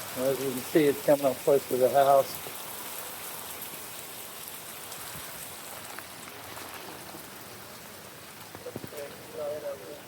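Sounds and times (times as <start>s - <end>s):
heavy rain pouring: 0.0s - 10.0s.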